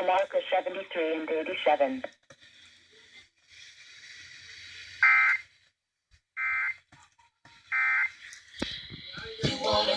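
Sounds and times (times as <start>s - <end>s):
faint hiss: 2.3s - 6.0s.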